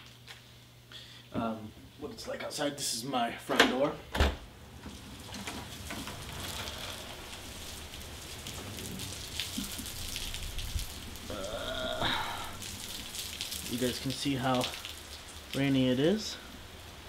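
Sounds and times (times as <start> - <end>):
steady rain on hard surfaces: 4.6 - 17.0.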